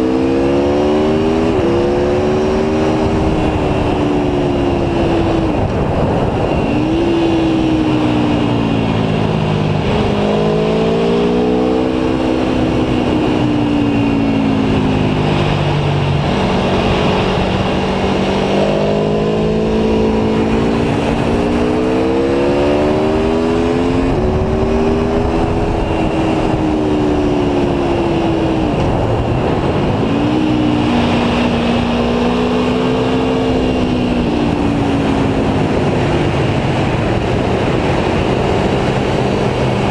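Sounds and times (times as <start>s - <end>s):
wind noise: 0.0s - 39.9s.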